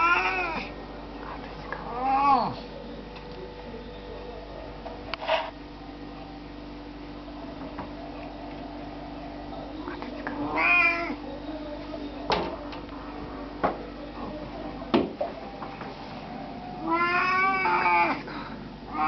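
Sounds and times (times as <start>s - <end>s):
cat calling: 0.0s - 0.7s, 10.4s - 11.8s, 16.8s - 18.2s.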